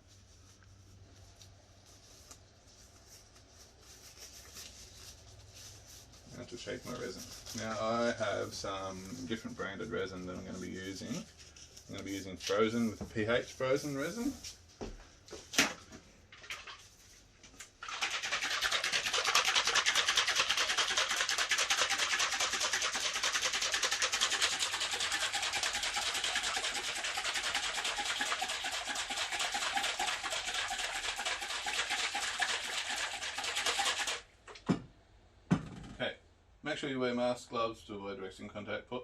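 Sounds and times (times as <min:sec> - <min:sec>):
bottle being shaken: 0:03.7 - 0:13.0, 0:16.4 - 0:34.3.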